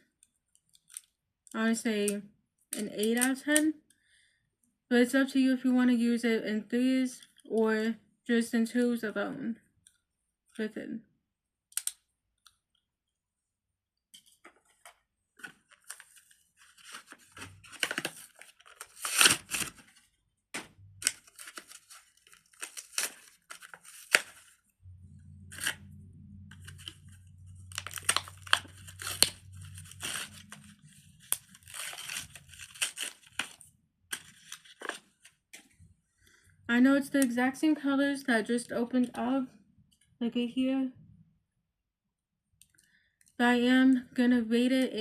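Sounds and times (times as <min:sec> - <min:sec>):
low hum: 0:24.8 - 0:32.4.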